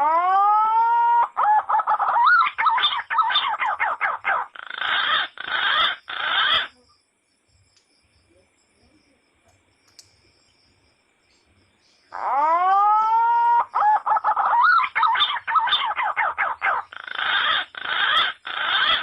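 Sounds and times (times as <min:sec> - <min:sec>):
chicken squawking harshly: 0:12.2 - 0:19.0.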